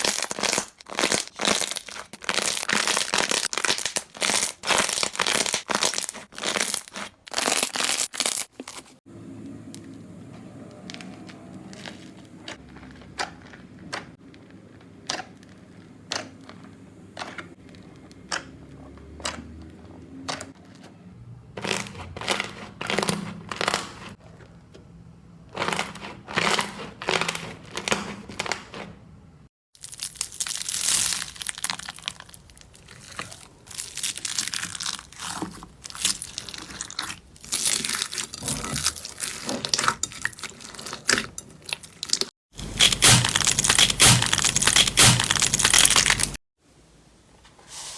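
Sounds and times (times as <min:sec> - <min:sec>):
slime popping and crackling: 0:00.0 - 0:09.0, 0:29.8 - 0:41.2, 0:41.8 - 0:46.4.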